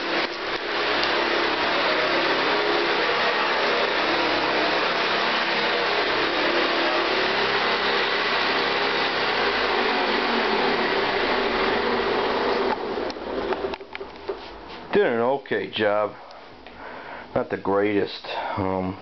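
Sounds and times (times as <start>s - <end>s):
upright vacuum cleaner running: 0.0s - 15.0s.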